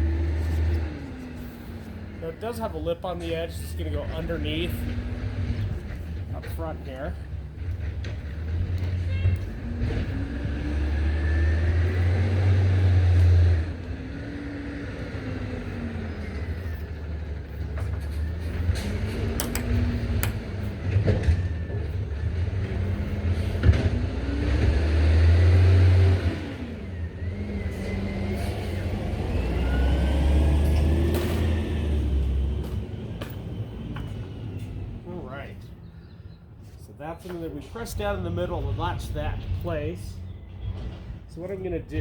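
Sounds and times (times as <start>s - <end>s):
motor traffic passing: 0.0s - 42.0s
sharp clicks and knocks: 17.8s - 21.5s.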